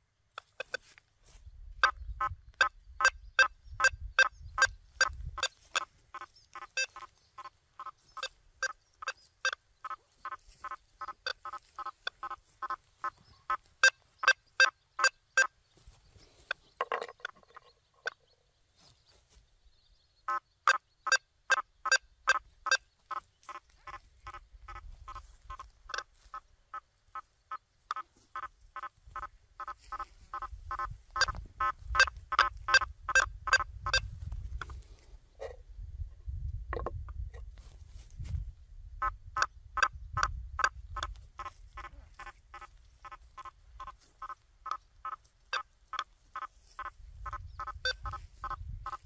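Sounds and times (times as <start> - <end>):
metal detector beeping: 6.6 - 7.1, 8.2 - 9.6, 13.8 - 15.5, 29.6 - 34.1, 47.6 - 48.6.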